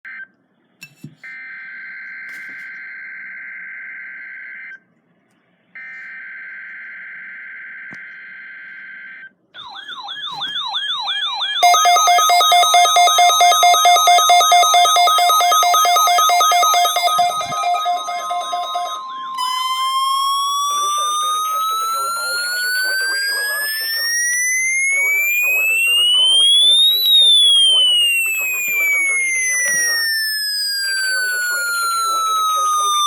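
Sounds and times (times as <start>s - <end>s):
warbling siren-like alert tone: 9.6s - 33.0s
harsh digital data tones: 10.6s - 33.0s
rapidly pulsing alert tone: 10.6s - 33.0s.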